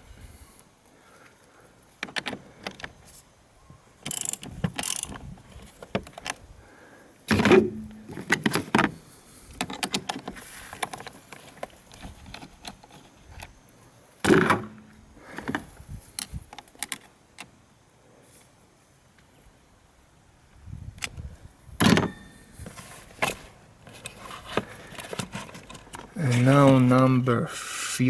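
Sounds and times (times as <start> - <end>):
metal tools clicking and knocking: 4.0 - 5.2
ratchet wrench clicking: 4.1 - 5.2.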